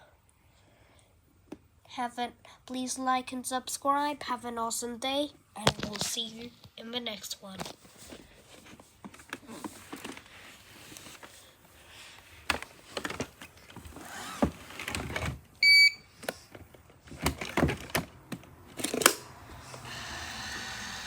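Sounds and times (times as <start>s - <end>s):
clicks and knocks of handling: 8.6s - 11.4s.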